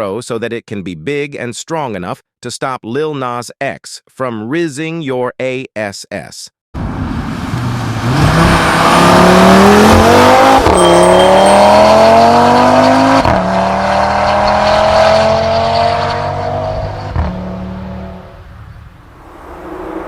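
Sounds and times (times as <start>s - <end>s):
car engine accelerating hard: 6.8s - 20.0s.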